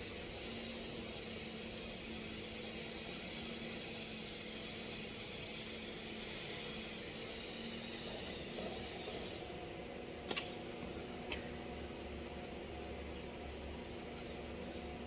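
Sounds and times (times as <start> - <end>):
welding arc hissing: 0.0 - 9.6.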